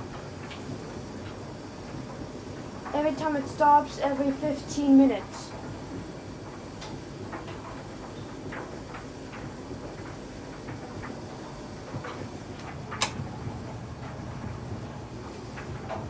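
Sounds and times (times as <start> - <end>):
clothes dryer drum humming: 0.0 - 16.0
light clicks in dryer: 6.8 - 16.0.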